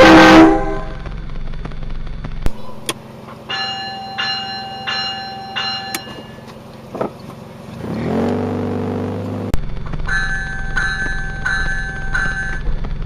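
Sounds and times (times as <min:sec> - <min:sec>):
air train horn chord: 0:00.0 - 0:01.0
train bell ringing: 0:03.4 - 0:06.7, 0:10.1 - 0:12.7.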